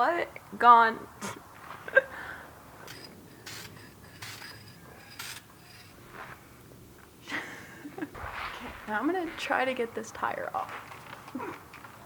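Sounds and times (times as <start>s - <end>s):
short hissing strokes: 2.9s - 5.5s.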